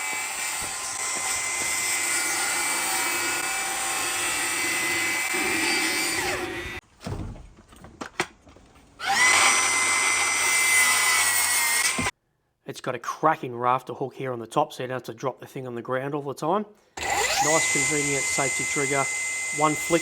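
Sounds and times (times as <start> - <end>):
circular saw whining: 0.0 - 6.8, 9.0 - 12.1, 17.0 - 20.0.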